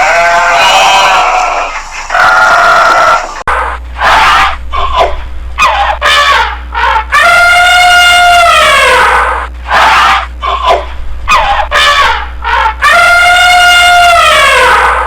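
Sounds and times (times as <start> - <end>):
animal crying loudly: 0.0 - 15.0.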